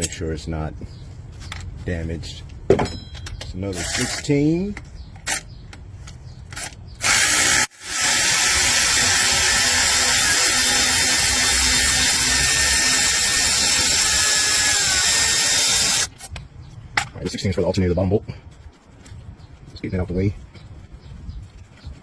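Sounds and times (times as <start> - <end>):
power ratchet spinning bolt: 6.6 - 16.1.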